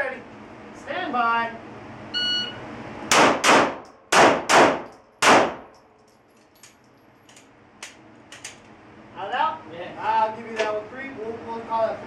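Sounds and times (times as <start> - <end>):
handgun shots: 3.1 - 5.8.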